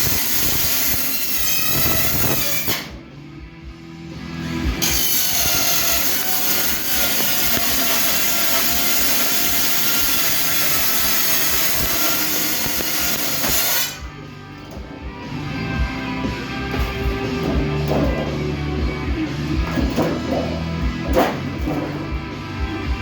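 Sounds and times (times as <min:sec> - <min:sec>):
power tool whining on sheet metal: 0:00.0 - 0:02.9, 0:04.8 - 0:14.2.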